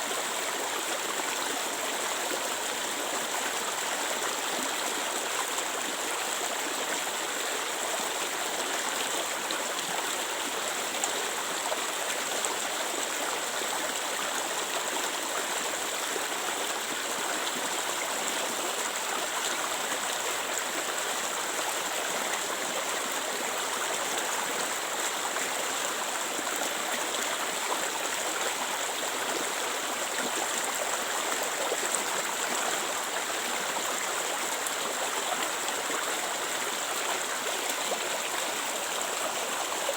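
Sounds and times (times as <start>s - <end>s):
stream water rushing: 0.0s - 39.9s.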